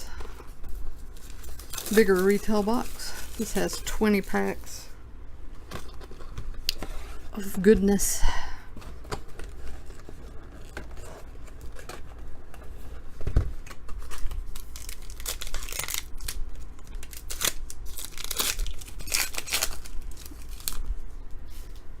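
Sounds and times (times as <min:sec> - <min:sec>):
foil packs ripping and crinkling: 0:00.1 - 0:04.9, 0:08.9 - 0:12.7, 0:13.6 - 0:21.0.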